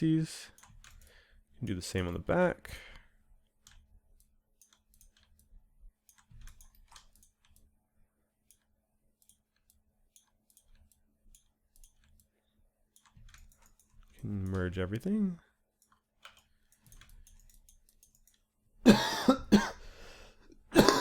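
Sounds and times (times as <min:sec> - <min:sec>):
computer mouse and keyboard clicking: 0:00.5 - 0:07.8, 0:08.4 - 0:15.2, 0:15.8 - 0:18.5.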